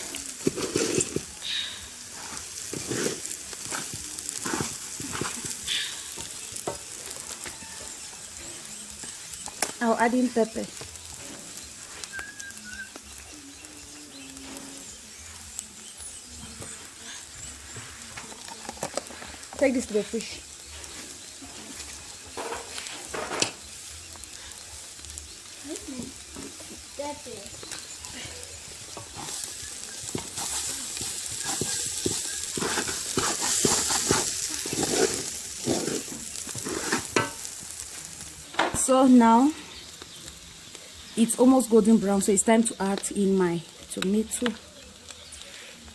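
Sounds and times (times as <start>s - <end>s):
rice sizzling in oil: 0.0s - 45.9s
spoon scraping and knocking pot: 31.4s - 37.4s.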